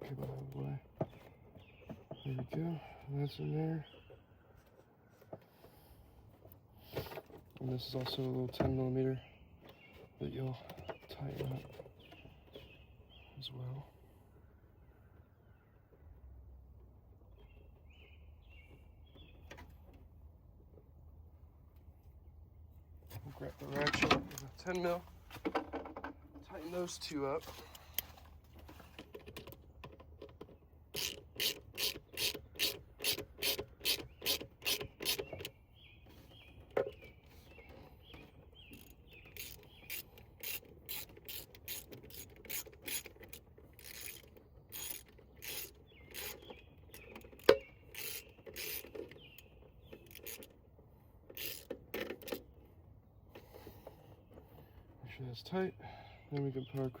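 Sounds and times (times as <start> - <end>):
hand ratchet clicking: 30.9 - 35.4, 38.7 - 49.1, 50.0 - 50.5, 51.3 - 52.4.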